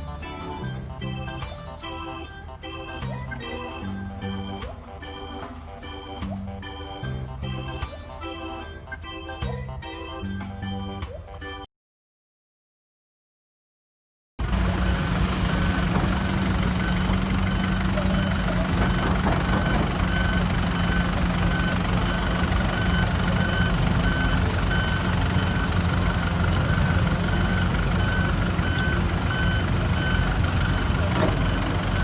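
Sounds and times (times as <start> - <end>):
diesel machinery running: 0.0 - 11.0, 14.4 - 32.0
warning beeper: 14.8 - 32.0.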